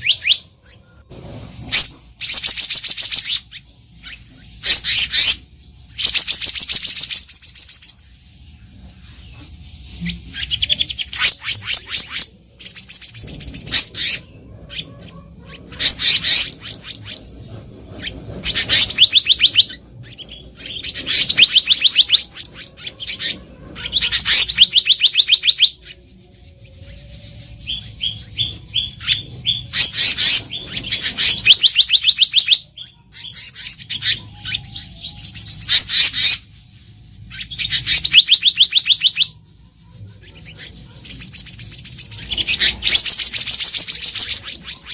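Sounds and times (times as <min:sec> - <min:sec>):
bird calling rapid ringing notes: 0:20.8 - 0:23.1, 0:24.0 - 0:25.9, 0:27.6 - 0:33.0, 0:37.7 - 0:39.4.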